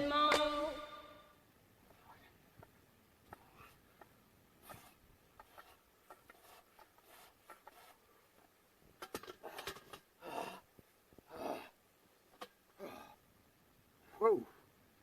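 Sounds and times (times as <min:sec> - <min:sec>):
faint clicks and rubbing: 0:01.8 - 0:10.1.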